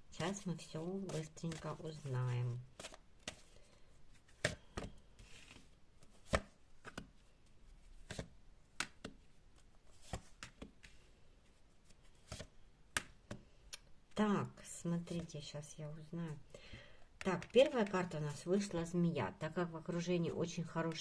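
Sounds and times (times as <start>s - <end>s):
cards shuffled and slapped: 2.7s - 3.6s, 4.2s - 7.2s, 7.9s - 9.3s, 9.9s - 11.1s, 11.9s - 13.5s.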